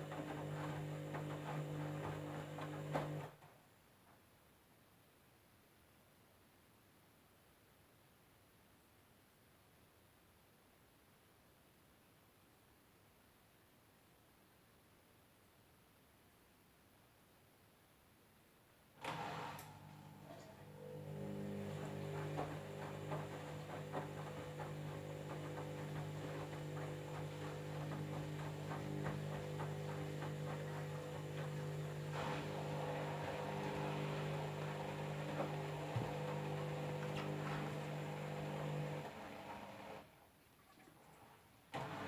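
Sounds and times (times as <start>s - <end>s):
washing machine motor hum: 0.0s - 3.4s, 19.0s - 40.2s, 41.0s - 42.0s.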